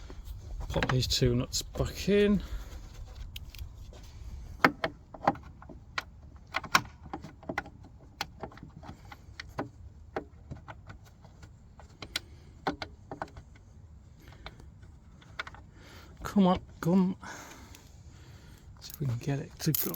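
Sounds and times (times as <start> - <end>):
clicks and knocks of handling parts: 4.6 - 15.7, 18.8 - 19.9.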